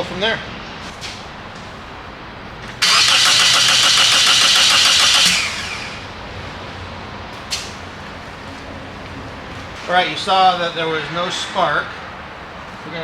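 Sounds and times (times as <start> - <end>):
car engine cranking on starter: 2.7 - 6.4.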